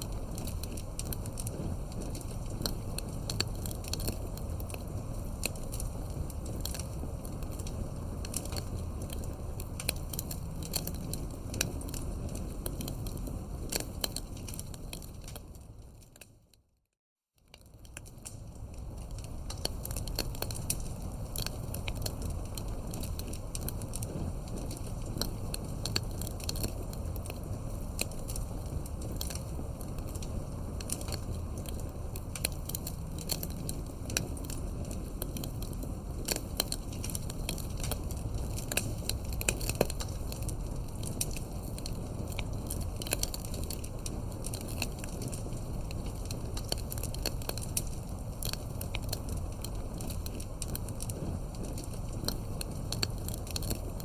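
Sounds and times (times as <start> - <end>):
wood fire crackling and popping: 0.0 - 16.6, 17.4 - 54.0.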